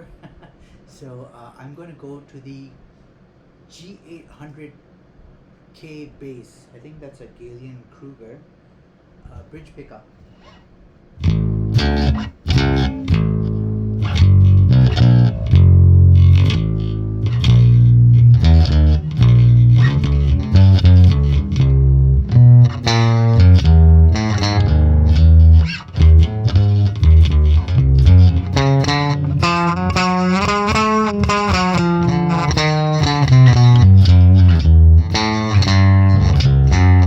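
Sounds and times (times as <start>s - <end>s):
electric bass plucked riffs: 11.2s - 37.0s.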